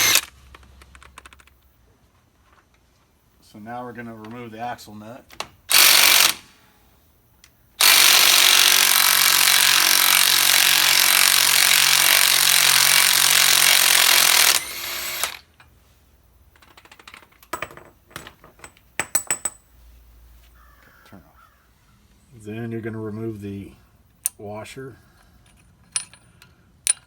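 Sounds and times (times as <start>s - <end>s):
impact wrench hammering: 0.0s - 0.3s
metallic clicks and rattles: 0.1s - 1.7s, 25.1s - 27.0s.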